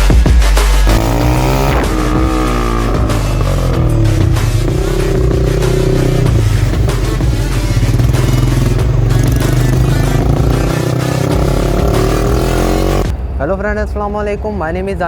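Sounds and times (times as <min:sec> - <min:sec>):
music: 0:00.0 - 0:15.0
motorcycle engine revving: 0:00.7 - 0:13.1.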